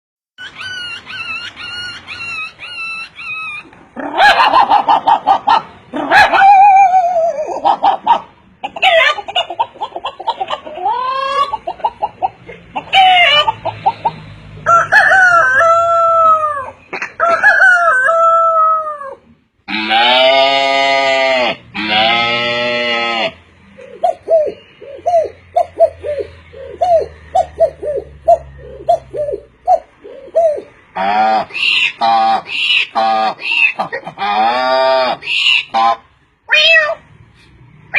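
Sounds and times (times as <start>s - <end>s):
man imitating animal calls: 18.7s - 37.0s.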